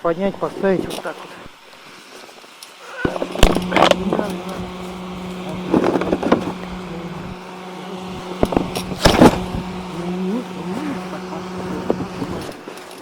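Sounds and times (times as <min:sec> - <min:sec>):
small engine idling: 0:03.0 - 0:12.7
knocks and clunks of handling: 0:03.1 - 0:07.4.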